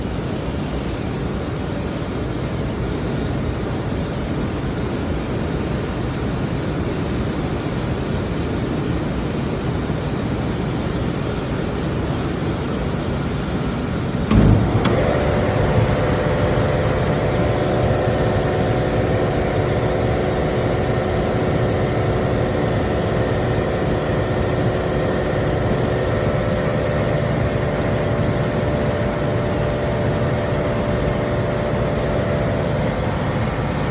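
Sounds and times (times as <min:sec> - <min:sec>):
air rushing from hvac: 0:12.6 - 0:33.9
multi-tone hum: 0:14.0 - 0:33.9
sharp click: 0:14.3 - 0:16.2.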